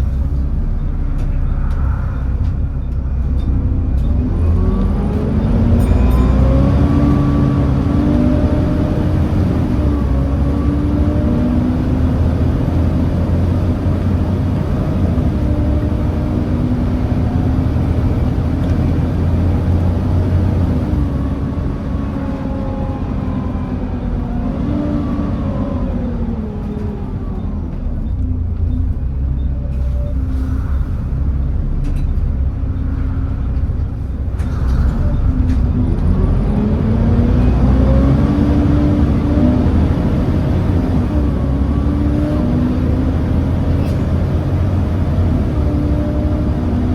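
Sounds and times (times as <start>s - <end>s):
bus engine and gearbox: 0.0s - 46.9s.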